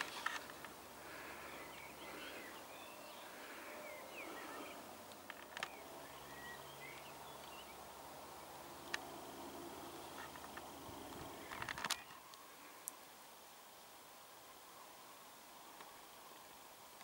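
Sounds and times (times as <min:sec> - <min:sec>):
small birds chirping: 0:00.0 - 0:13.0
soft background hiss: 0:00.0 - 0:17.0
sharp clicks: 0:10.2 - 0:12.2.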